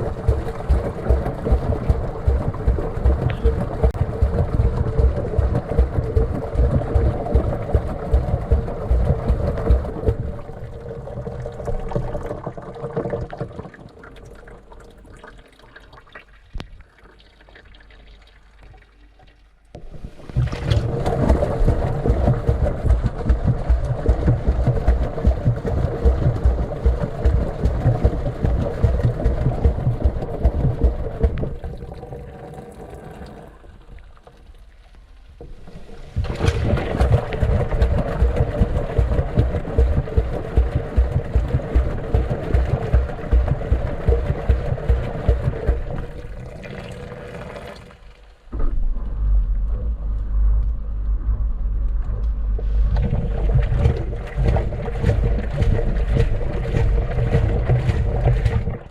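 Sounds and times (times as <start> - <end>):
washing machine load churning: 0.0 - 12.4, 20.2 - 31.9, 36.1 - 47.6, 53.0 - 58.9
motor hum: 0.0 - 12.5, 19.7 - 34.0, 35.4 - 58.9
water sloshing: 0.0 - 49.2, 52.3 - 58.9.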